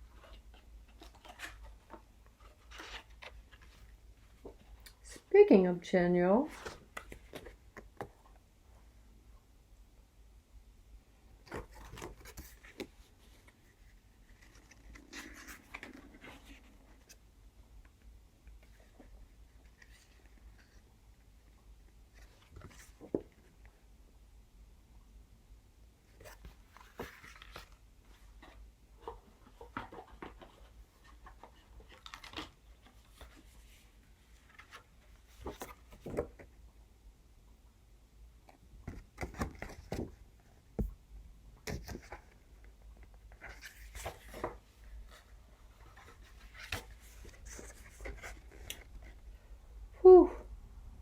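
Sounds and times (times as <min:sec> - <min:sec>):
paper and card rustling: 0:00.0 - 0:05.3, 0:11.4 - 0:17.2, 0:26.2 - 0:36.5, 0:41.7 - 0:49.2.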